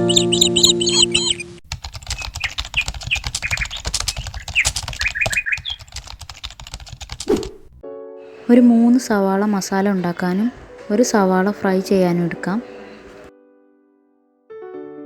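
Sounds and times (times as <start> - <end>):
short bird chirps: 0.0 - 1.5, 2.2 - 5.9
rapid light clicks: 1.7 - 7.3.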